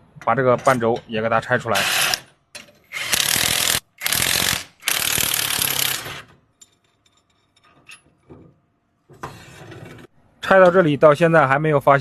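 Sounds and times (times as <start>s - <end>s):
ratchet wrench clicking: 2.9s - 6.1s.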